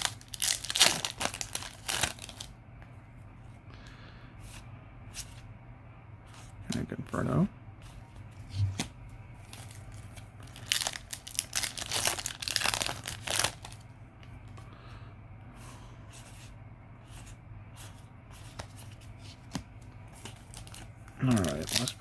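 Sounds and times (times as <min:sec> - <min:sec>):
foil pack tearing and crinkling: 0:00.0 - 0:02.5, 0:09.5 - 0:13.8, 0:20.4 - 0:22.0.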